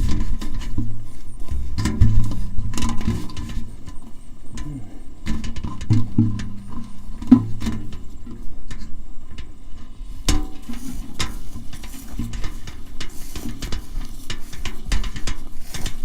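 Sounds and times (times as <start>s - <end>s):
clicks and knocks: 0.0s - 9.6s
kite reel resonator humming: 0.0s - 16.0s.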